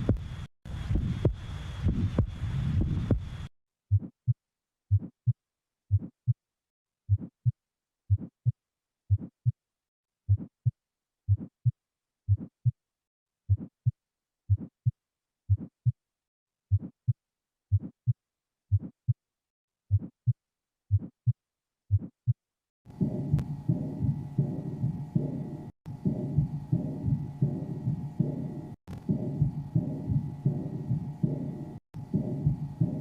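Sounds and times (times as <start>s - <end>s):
heartbeat lub-dub: 0.0s - 4.1s, 7.1s - 9.6s, 13.5s - 16.0s, 19.9s - 33.0s.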